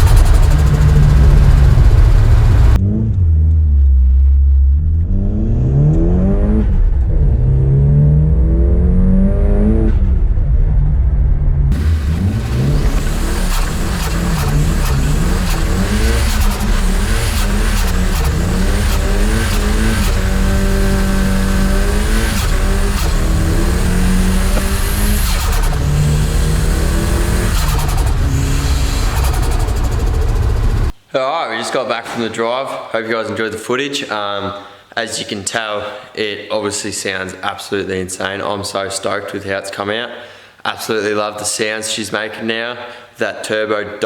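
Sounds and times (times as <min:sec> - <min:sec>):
turbo compressor surge flutter: 0:00.0 - 0:02.8, 0:11.7 - 0:31.0
car engine accelerating hard: 0:00.0 - 0:31.0.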